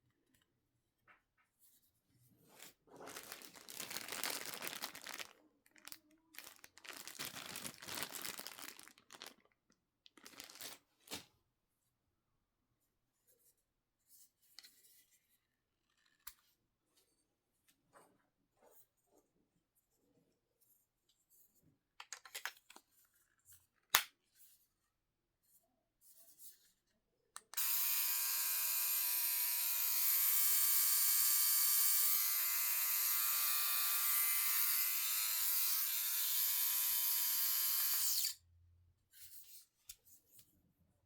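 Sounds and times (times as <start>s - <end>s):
electric hair trimmer buzzing: 27.6s - 38.4s.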